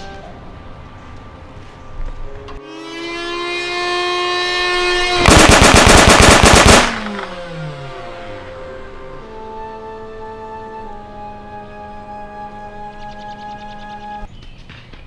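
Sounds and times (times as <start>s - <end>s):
blaster motor whine: 2.6s - 9.8s
rapid burst of darts: 5.2s - 7.3s.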